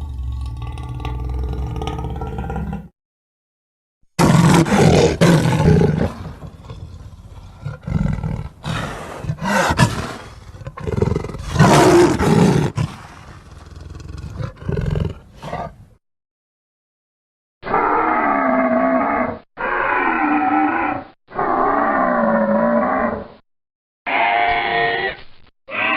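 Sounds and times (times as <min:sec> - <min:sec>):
dinosaur growls: 0:00.0 - 0:02.9
dinosaur roars: 0:00.0 - 0:02.9, 0:17.7 - 0:23.3.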